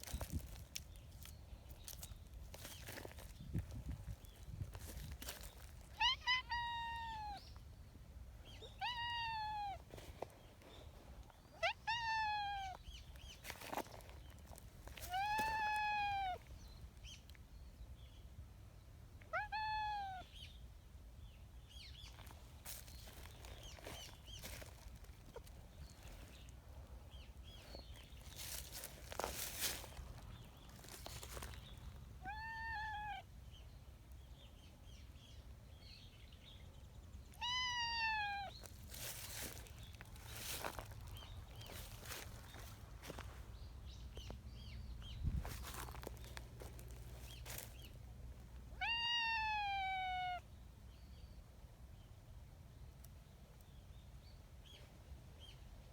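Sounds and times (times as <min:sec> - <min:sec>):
cat meowing: 0:05.9 - 0:07.4, 0:08.6 - 0:09.8, 0:11.5 - 0:12.8, 0:15.0 - 0:16.4, 0:19.3 - 0:20.3, 0:32.2 - 0:33.3, 0:37.3 - 0:39.3, 0:48.7 - 0:50.4.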